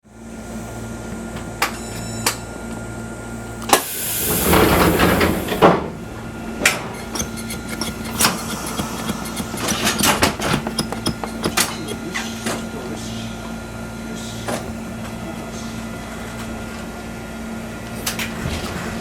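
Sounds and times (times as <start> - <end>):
air hissing: 3.7 - 11.5
sharp clicks and knocks: 6.6 - 12.6.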